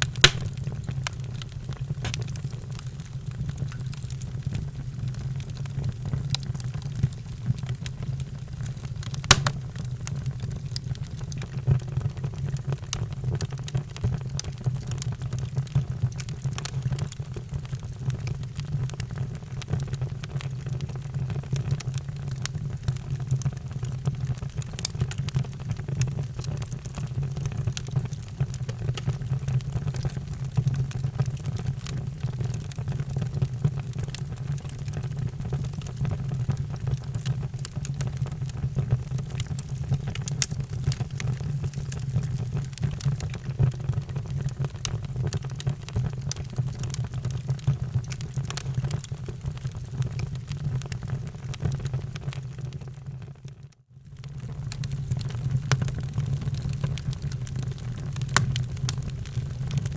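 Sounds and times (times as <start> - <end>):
wood fire crackling: 0.0 - 52.9, 54.2 - 59.9.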